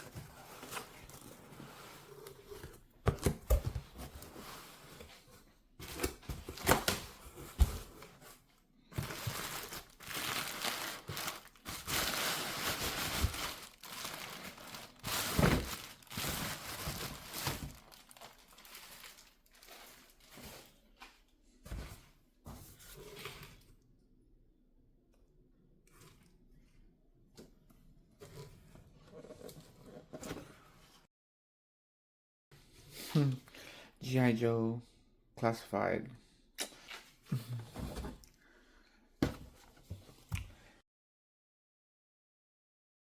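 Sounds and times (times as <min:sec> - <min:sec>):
packing material crinkling: 0:09.0 - 0:20.8.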